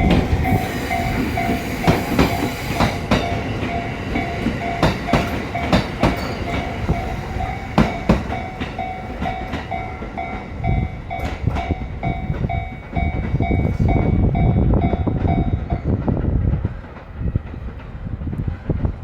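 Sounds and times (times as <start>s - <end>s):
train wheels clacking over rail joints: 0.0s - 14.0s
level crossing warning bell: 0.0s - 15.8s
train rumble: 0.0s - 19.0s.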